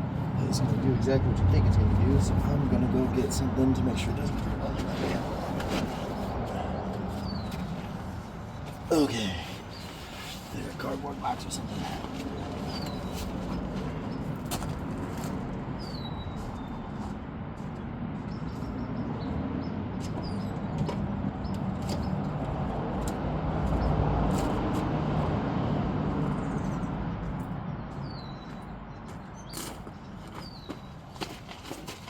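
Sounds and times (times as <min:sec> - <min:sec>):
low hum of passing vehicle: 0:00.0 - 0:32.0
bird chirping: 0:06.1 - 0:14.4, 0:15.8 - 0:17.1, 0:28.0 - 0:31.0.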